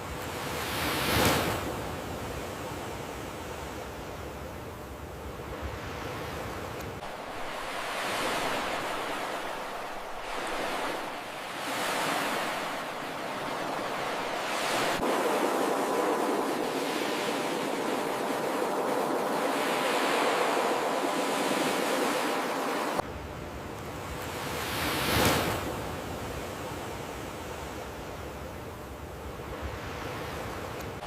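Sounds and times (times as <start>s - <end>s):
waves breaking and washing in: 0.0s - 31.0s
faint steady tones: 2.1s - 24.2s.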